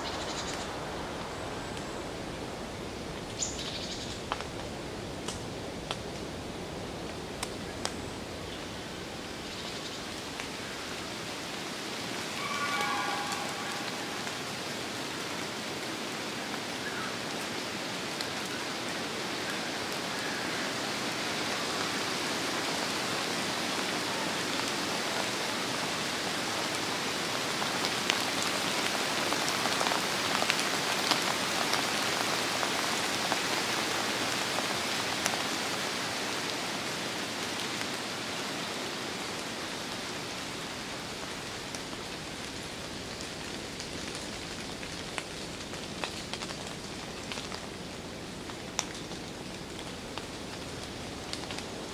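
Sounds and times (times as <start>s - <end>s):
rain falling in forest: 0.0s - 51.9s
heavy raindrops ticking: 41.6s - 51.9s.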